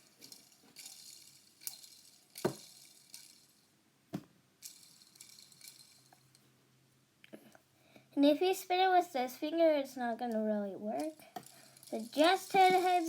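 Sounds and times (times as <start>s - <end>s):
plastic lego pieces clicking: 0.0s - 3.5s, 4.6s - 6.4s, 11.0s - 13.0s.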